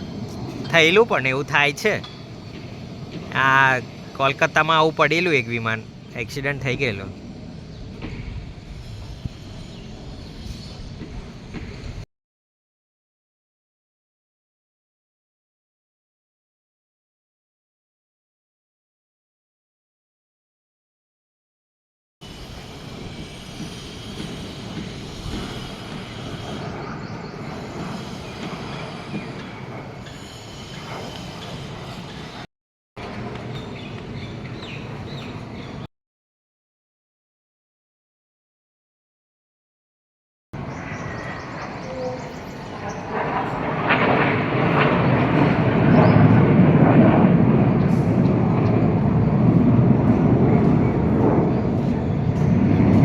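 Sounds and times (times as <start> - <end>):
jet engines roaring overhead: 0.0 - 12.0, 22.2 - 35.9, 40.6 - 53.0.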